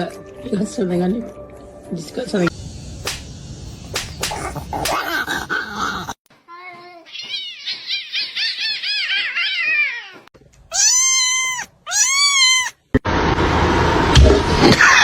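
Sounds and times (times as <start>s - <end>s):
cat meowing: 7.1s - 12.8s.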